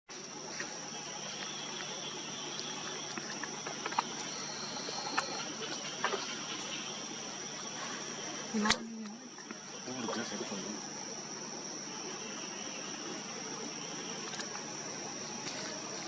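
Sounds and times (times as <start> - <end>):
high-pitched insect drone: 0.1 - 16.0
faint chirps and clicks: 1.2 - 10.3.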